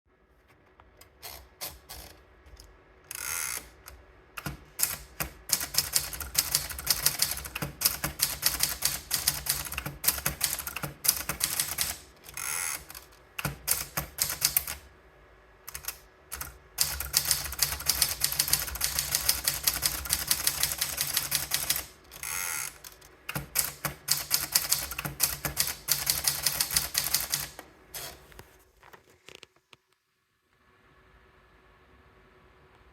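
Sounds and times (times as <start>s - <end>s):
typewriter carriage return rasp: 4.4s - 14.8s, 15.7s - 28.3s.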